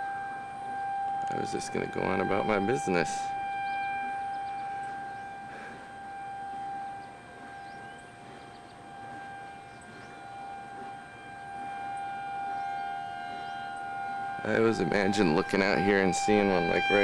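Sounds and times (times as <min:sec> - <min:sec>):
tornado warning siren: 0:00.0 - 0:17.0.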